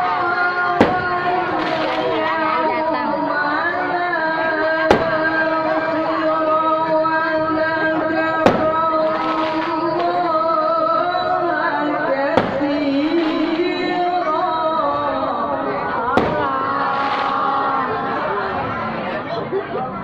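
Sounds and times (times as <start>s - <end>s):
sharp bangs: 0.8s - 2.2s, 4.9s - 5.3s, 8.4s - 10.1s, 12.3s - 13.8s, 16.1s - 17.6s.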